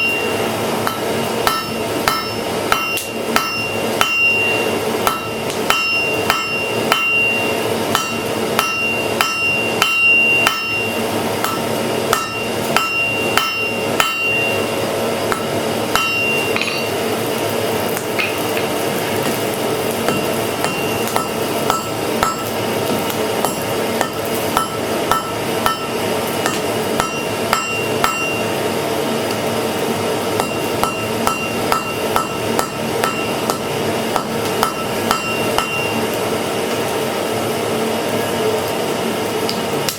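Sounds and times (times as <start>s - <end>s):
hammer striking iron on anvil: 0.0s - 14.7s, 15.3s - 17.0s, 20.0s - 22.6s, 23.4s - 28.5s, 30.3s - 36.0s
steady low hum: 0.0s - 39.9s.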